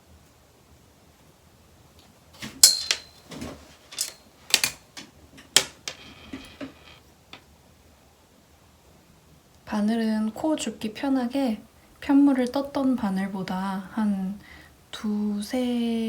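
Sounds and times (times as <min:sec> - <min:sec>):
knitting needles clicking: 0:03.9 - 0:07.0.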